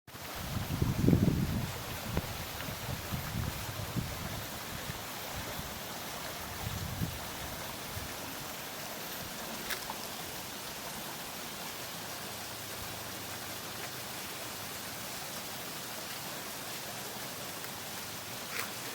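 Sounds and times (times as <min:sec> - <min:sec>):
waterfall rushing: 0:00.1 - 0:18.9
wind buffeting microphone: 0:00.3 - 0:05.8, 0:06.4 - 0:08.2.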